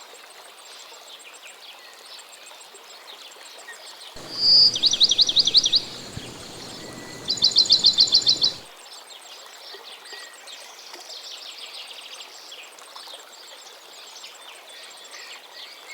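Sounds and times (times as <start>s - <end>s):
birds chirping and twittering: 4.2s - 8.7s
songbird trill: 4.2s - 8.7s.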